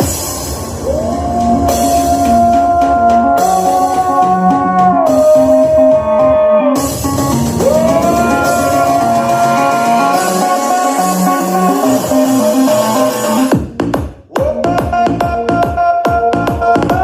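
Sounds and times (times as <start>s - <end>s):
drums: 0.0s - 17.0s
guitar: 0.9s - 13.5s
held gliding lead note: 6.8s - 12.0s.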